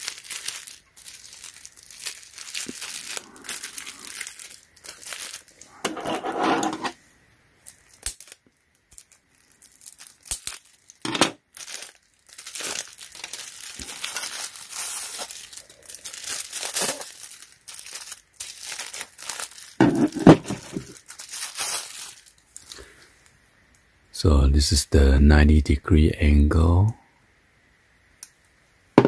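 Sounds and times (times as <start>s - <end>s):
plastic packaging crinkling and tearing: 0.0s - 6.0s, 7.6s - 23.4s.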